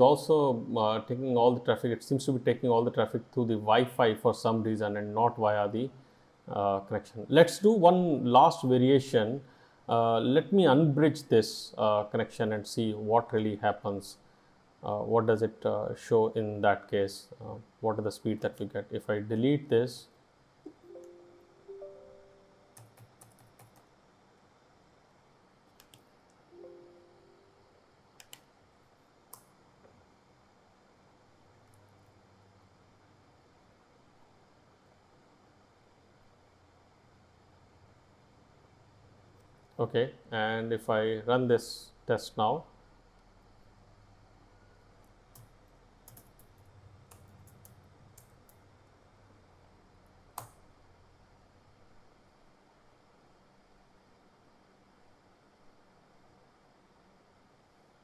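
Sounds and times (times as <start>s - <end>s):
laptop keyboard keys clicking: 22.8s - 23.9s, 25.7s - 26.1s, 28.2s - 28.5s, 45.4s - 48.6s
laptop keyboard clicks: 25.7s - 26.1s, 28.2s - 28.5s.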